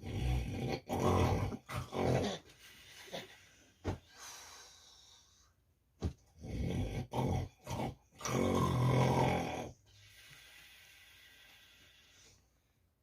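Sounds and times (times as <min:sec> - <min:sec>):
man snoring: 0:00.0 - 0:02.4, 0:06.4 - 0:09.8
loud snorts: 0:06.4 - 0:09.8.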